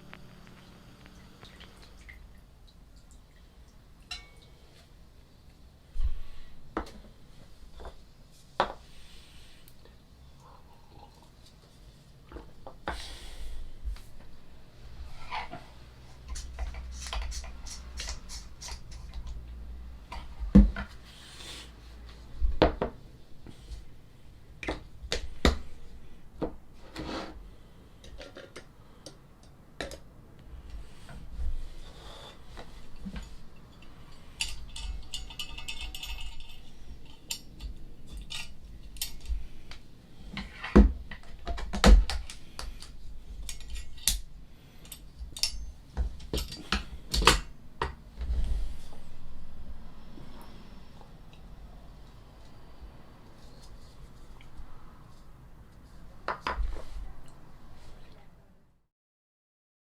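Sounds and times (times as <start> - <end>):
cups and cookware clinking: 4.0 - 4.6, 32.9 - 38.5.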